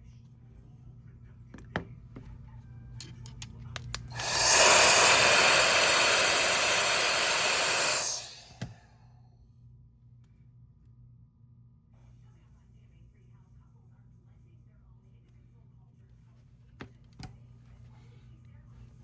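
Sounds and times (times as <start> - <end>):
air hissing: 4.1 - 8.7.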